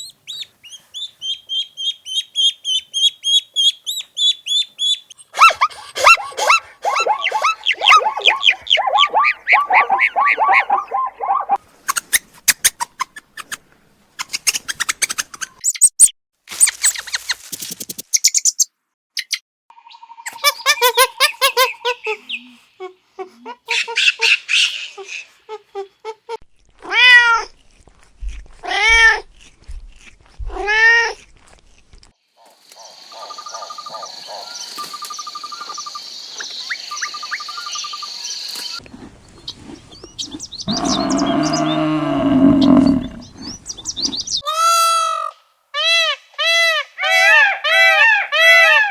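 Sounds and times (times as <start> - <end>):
farm animal calls: 5.4 - 11.6, 38.8 - 44.8
insect chirping: 35.1 - 44.4.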